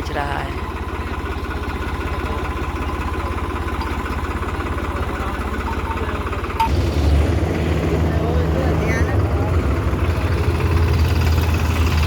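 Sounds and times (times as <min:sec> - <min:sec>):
heavy diesel engine straining: 0:00.0 - 0:12.0.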